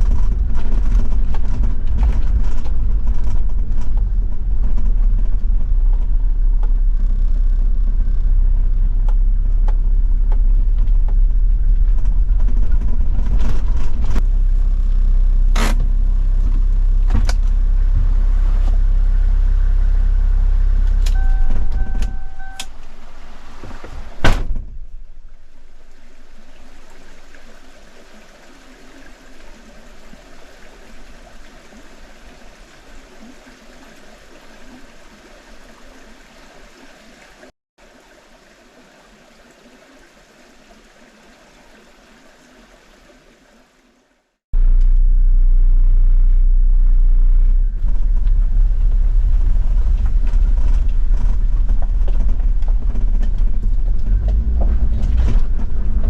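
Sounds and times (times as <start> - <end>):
diesel engine rumbling: 0.0 - 27.7, 44.6 - 56.0
two-note electronic chime: 21.1 - 22.8
loud thump: 24.2 - 24.9.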